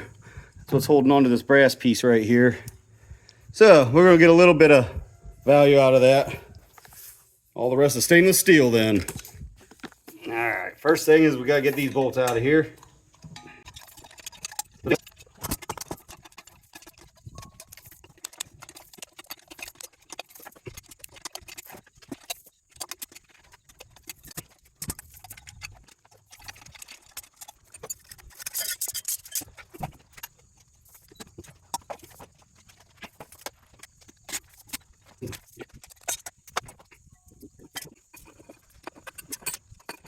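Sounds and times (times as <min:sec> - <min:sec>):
metal tools clicking on metal: 0:10.9 - 0:32.1, 0:37.6 - 0:40.0.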